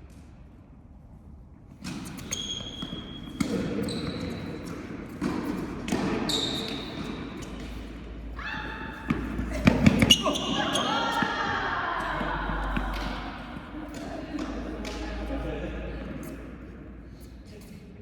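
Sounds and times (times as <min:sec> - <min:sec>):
shoe squeaks: 0:01.9 - 0:11.4
tennis ball hit by rackets: 0:04.7 - 0:06.3, 0:08.9 - 0:10.4.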